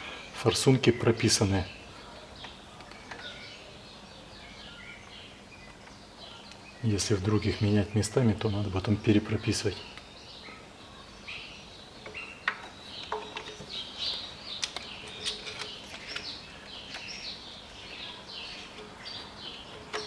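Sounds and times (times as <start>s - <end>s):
small birds chirping: 0.0s - 20.0s
sharp clicks: 12.0s - 17.3s.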